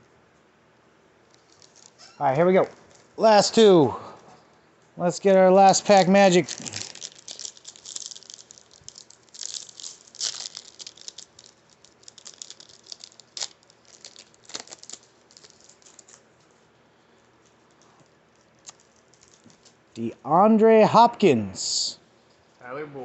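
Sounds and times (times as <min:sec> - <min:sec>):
wrapper tearing and crinkling: 0:01.3 - 0:03.7, 0:05.8 - 0:16.5, 0:17.3 - 0:19.9
cards shuffled: 0:06.1 - 0:16.3.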